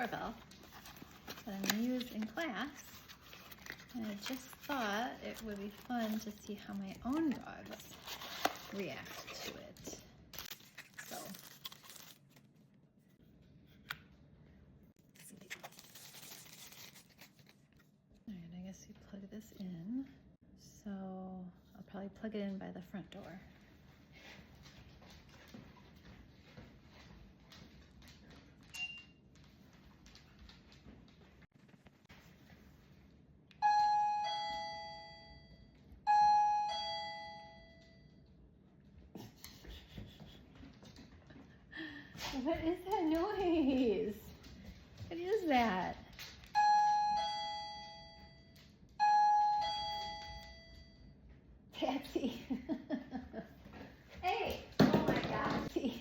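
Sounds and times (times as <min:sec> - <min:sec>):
packaging rustling: 0:00.4 - 0:12.5, 0:15.2 - 0:17.8
doorbell ding-dong chime: 0:33.6 - 0:38.0, 0:46.6 - 0:51.0.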